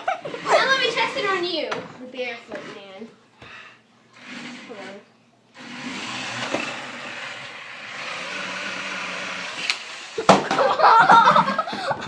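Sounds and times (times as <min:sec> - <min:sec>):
toy car electric motor whirring: 0:04.2 - 0:05.0, 0:05.6 - 0:10.3.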